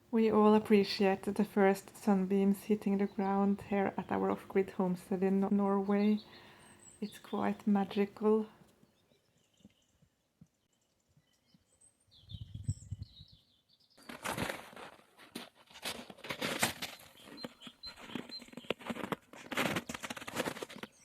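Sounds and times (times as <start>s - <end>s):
faint high bird chirps: 8.8s - 14.2s
dense crackling and rustling: 14.0s - 21.0s.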